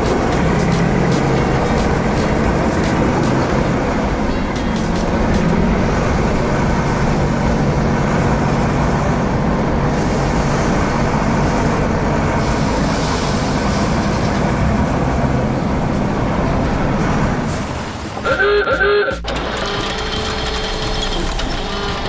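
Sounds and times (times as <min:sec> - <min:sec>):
vehicle engine running: 0:00.0 - 0:17.5.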